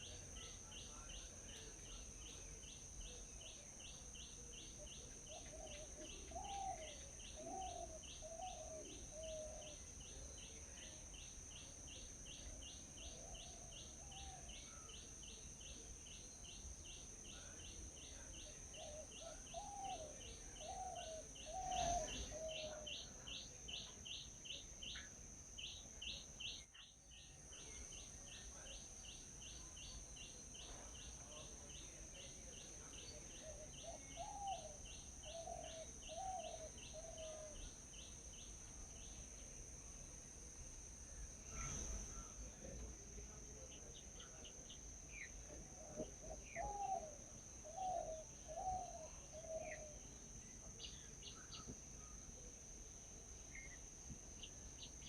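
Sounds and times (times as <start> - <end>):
lower bird calls: 3.0 - 10.2, 17.4 - 26.9, 44.2 - 50.1
birds chirping: 17.4 - 37.7.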